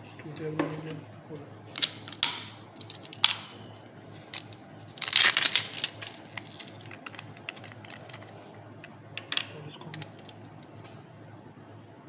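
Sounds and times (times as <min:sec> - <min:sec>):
packaging crinkling: 0:01.7 - 0:08.5, 0:10.0 - 0:10.8
packaging sharp clicks: 0:01.8 - 0:03.6, 0:04.3 - 0:08.3.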